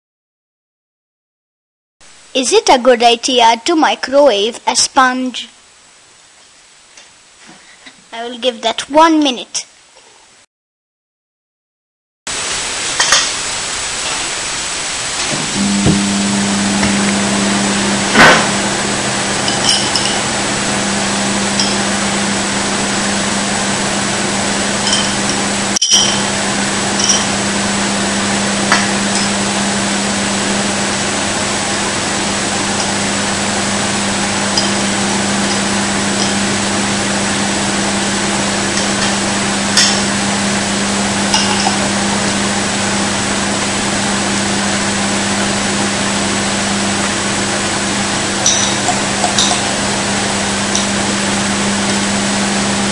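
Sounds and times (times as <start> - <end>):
microwave oven humming: 14.6 - 52.9.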